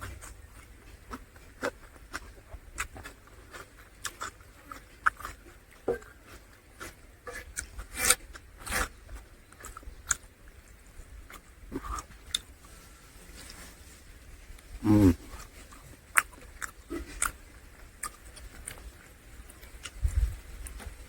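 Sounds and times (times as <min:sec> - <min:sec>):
person chewing and lip-smacking: 0:00.0 - 0:08.4, 0:09.6 - 0:10.3, 0:11.3 - 0:12.5, 0:14.9 - 0:20.9.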